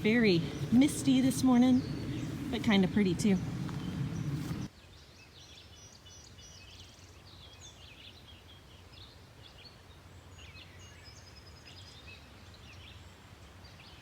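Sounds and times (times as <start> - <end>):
low steady hum: 0.0 - 4.7
small songbirds chirping: 0.0 - 14.0.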